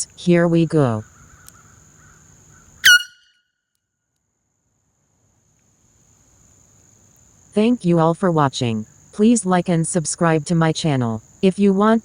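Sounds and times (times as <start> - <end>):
air horn blast: 2.8 - 3.2.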